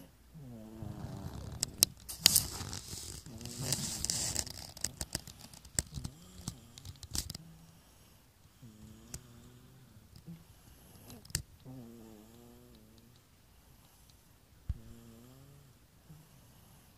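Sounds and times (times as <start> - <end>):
man snoring: 0.0 - 1.9, 8.6 - 13.0, 14.8 - 16.9
rustling: 0.8 - 7.5.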